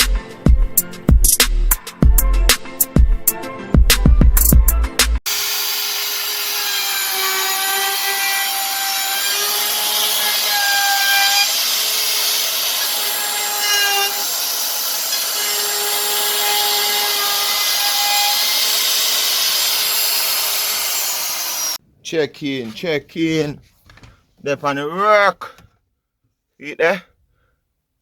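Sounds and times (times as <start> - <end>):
power tool motor whine: 5.3 - 21.8
rasping hiss of wood cutting: 5.3 - 21.8.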